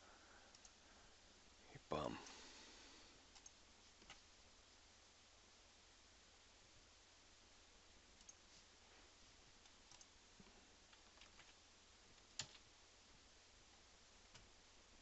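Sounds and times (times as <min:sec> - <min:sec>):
faint computer mouse clicks: 0:03.3 - 0:04.2, 0:09.9 - 0:10.1.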